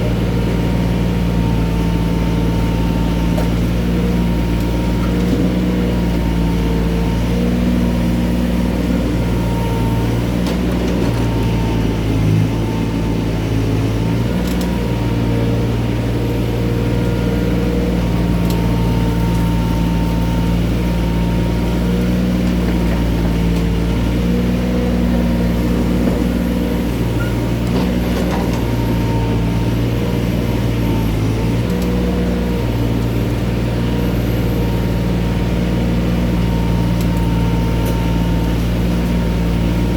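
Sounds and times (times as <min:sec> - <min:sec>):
excavator diesel engine running: 0:00.0 - 0:39.9.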